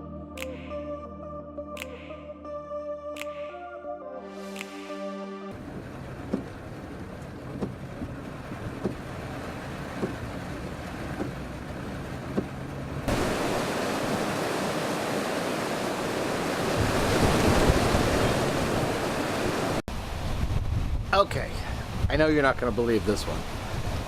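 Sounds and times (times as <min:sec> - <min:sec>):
car road and cabin noise: 0:05.5 - 0:13.6
wind buffeting microphone: 0:05.6 - 0:24.0.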